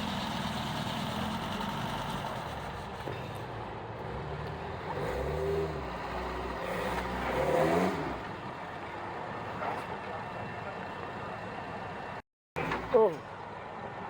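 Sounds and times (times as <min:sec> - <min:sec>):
vehicle engine revving: 0:04.0 - 0:08.3.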